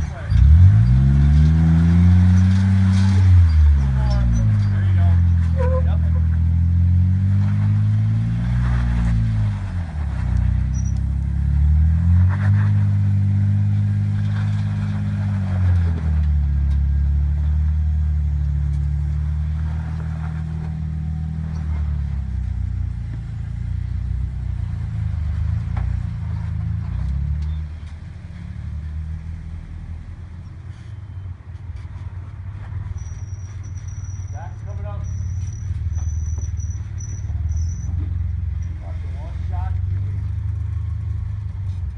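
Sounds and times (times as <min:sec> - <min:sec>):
engine revving: 0:00.0 - 0:27.6.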